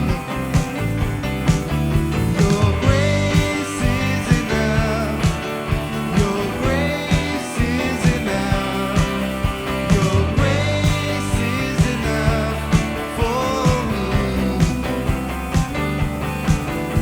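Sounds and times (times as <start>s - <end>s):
bass line: 0.0s - 17.0s
drum beat: 0.0s - 17.0s
person singing: 2.3s - 15.4s.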